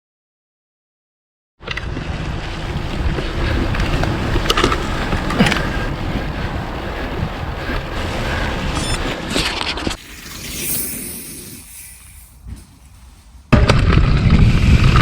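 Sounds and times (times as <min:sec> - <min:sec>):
bike knocks and rattles: 0:01.6 - 0:06.7
wind buffeting microphone: 0:01.7 - 0:09.4.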